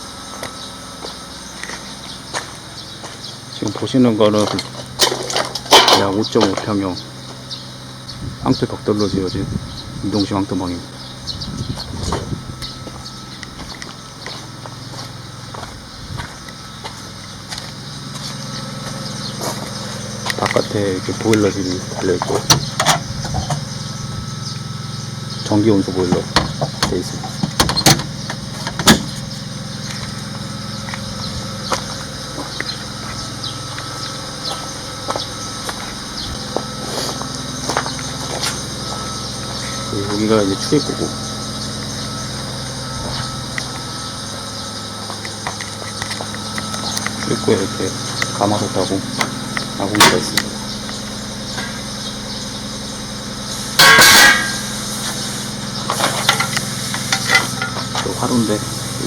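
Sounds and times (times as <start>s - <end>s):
low engine hum: 0.0s - 59.0s
small birds chirping: 0.4s - 5.0s, 6.0s - 53.7s, 55.2s - 59.0s
loud harsh noise: 16.6s - 59.0s.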